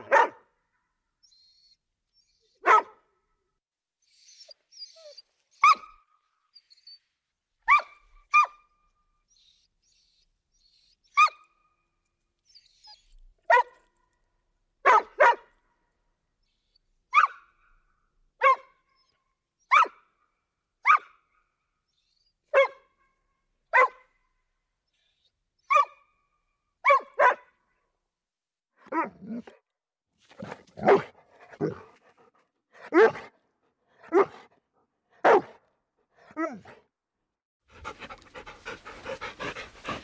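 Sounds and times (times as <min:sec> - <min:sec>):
dog barking: 0:00.0 - 0:00.5, 0:02.6 - 0:03.1, 0:05.6 - 0:05.9, 0:07.7 - 0:08.6, 0:13.5 - 0:13.8, 0:14.8 - 0:15.5, 0:17.1 - 0:17.4, 0:18.4 - 0:18.7, 0:19.7 - 0:20.0, 0:20.8 - 0:21.1, 0:22.5 - 0:22.9, 0:23.7 - 0:24.1, 0:25.7 - 0:26.0, 0:26.8 - 0:27.6, 0:30.4 - 0:31.9, 0:32.8 - 0:33.4, 0:34.1 - 0:34.5, 0:35.2 - 0:35.6.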